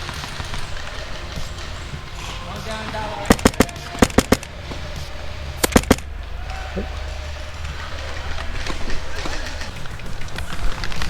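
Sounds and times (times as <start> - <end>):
airsoft gun shots: 2.6 - 6.1.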